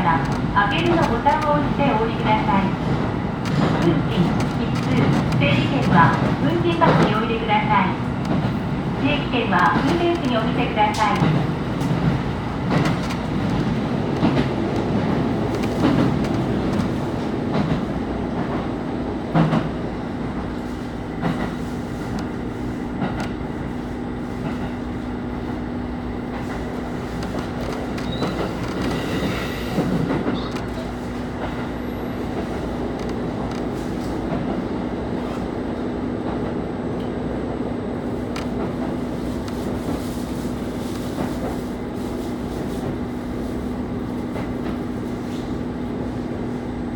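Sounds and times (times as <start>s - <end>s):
diesel railcar engine drone: 0.0s - 46.9s
wheels clicking over rail joints: 9.2s - 17.7s.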